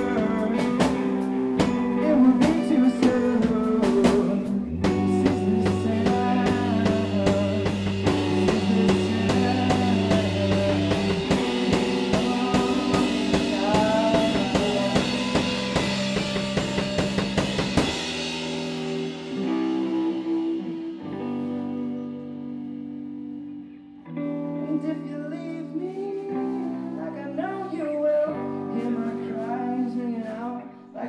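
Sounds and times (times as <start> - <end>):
drum kit: 0.0 - 23.5
bass guitar: 0.0 - 31.0
electric guitar chords: 0.0 - 31.0.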